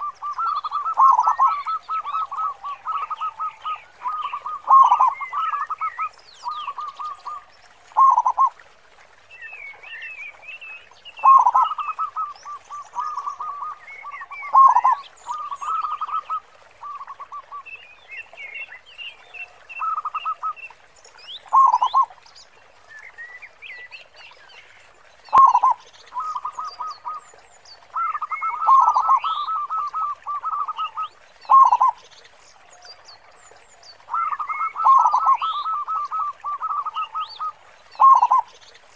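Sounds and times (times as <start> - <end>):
dove cooing: 34.1 - 38.4.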